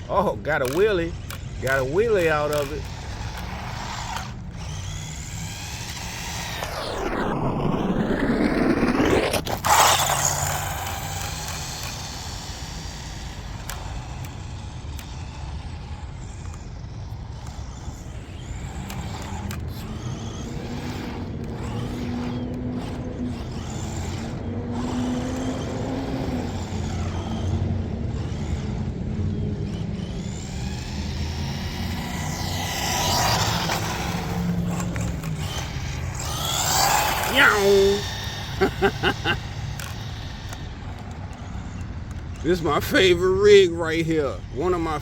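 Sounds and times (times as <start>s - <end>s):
electric motor running: 0.0s - 45.0s.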